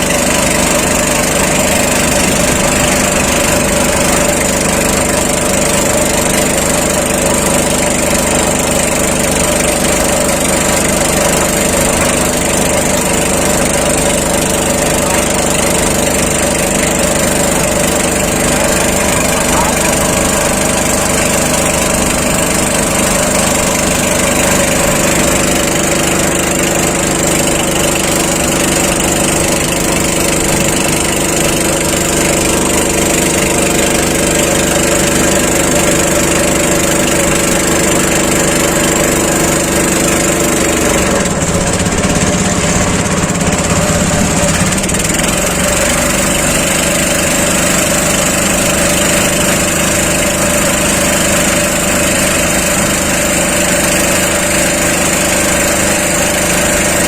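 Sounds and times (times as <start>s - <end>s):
small engine running: 0.0s - 57.0s.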